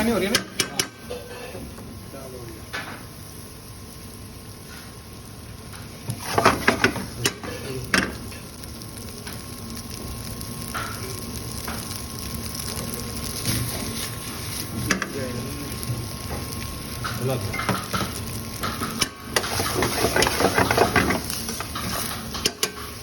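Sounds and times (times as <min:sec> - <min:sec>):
pot sizzling: 0:00.0 - 0:23.0
metal clanks and scrapes: 0:17.0 - 0:22.9.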